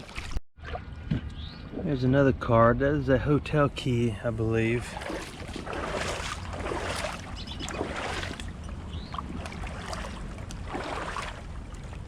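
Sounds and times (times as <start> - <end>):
creek water splashing: 0.0 - 1.0, 4.4 - 12.0.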